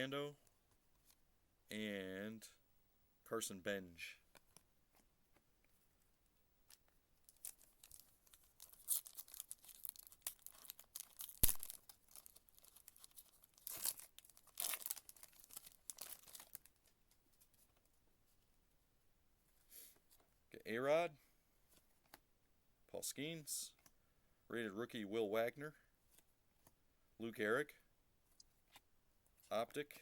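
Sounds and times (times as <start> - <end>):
foil wrapper tearing and crinkling: 7.3 - 16.7
sharp snap: 11.4 - 11.7.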